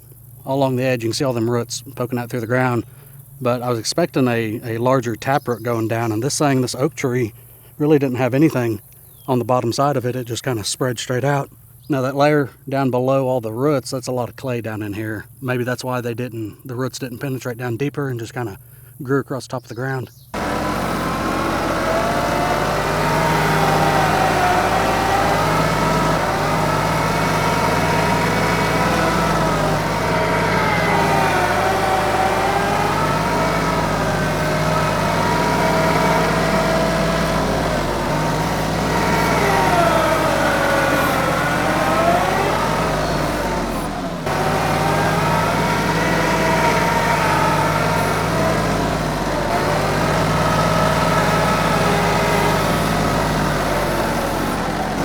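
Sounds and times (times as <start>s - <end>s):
tractor diesel engine under load: 0.0s - 18.9s, 20.3s - 55.0s
whine rising and falling: 20.4s - 55.0s.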